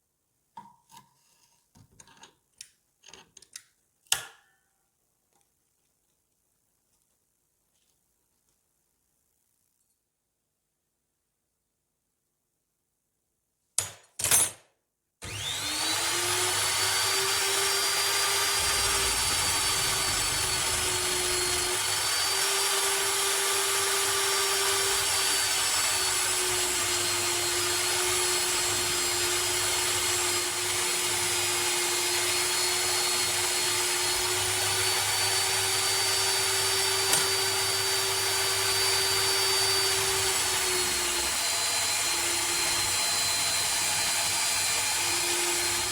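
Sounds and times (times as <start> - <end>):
power tool motor whining: 15.2 - 45.9.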